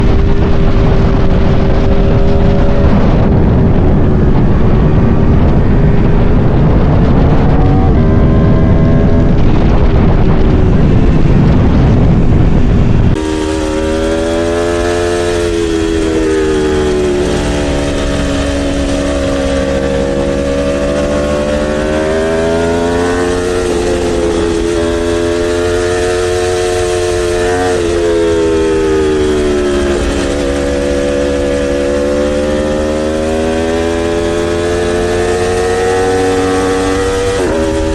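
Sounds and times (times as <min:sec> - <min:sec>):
motorcycle engine revving: 0:00.0 - 0:37.9
wind buffeting microphone: 0:00.0 - 0:37.9.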